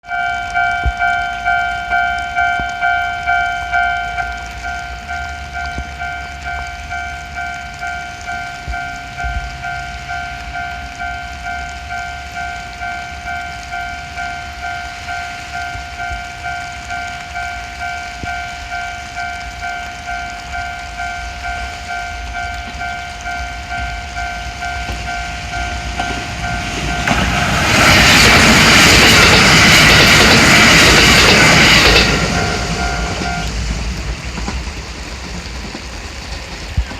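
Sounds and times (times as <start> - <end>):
railroad crossing bell ringing: 0.0 - 34.6
train wheels rushing: 12.4 - 36.9.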